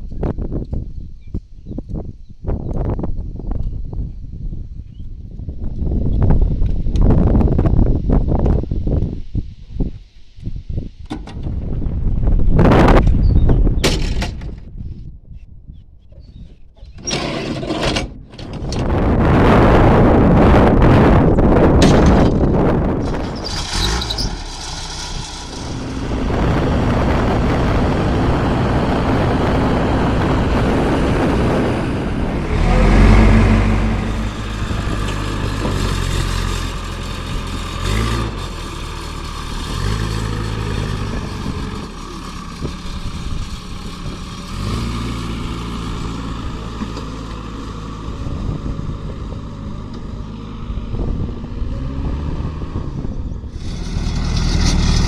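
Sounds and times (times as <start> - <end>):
backhoe diesel engine working: 16.2 - 55.0.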